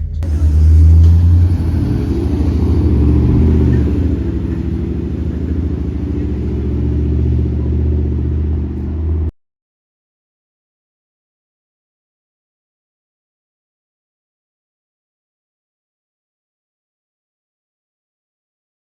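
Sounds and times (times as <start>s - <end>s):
bus engine droning: 0.0s - 9.3s.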